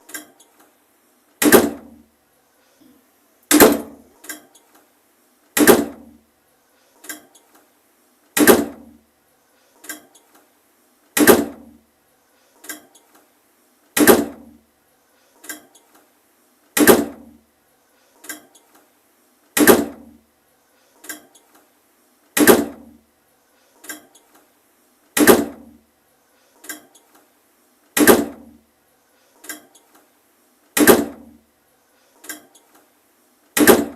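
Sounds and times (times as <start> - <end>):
door slamming: 3.5 - 4.0.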